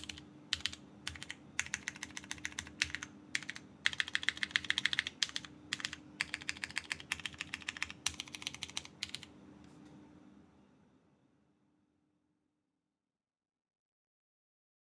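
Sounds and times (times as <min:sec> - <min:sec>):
mechanical keyboard typing: 0:00.0 - 0:09.3.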